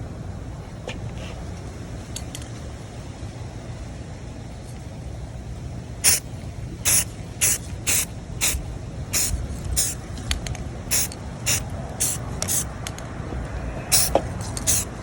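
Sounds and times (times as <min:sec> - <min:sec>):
low steady rumble: 0:00.0 - 0:15.0
spray paint can hissing: 0:06.0 - 0:10.1, 0:10.9 - 0:12.8, 0:13.9 - 0:15.0.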